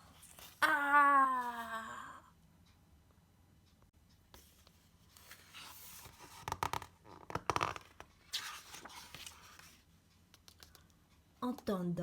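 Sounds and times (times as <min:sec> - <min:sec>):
paper rustling: 0:05.1 - 0:09.8.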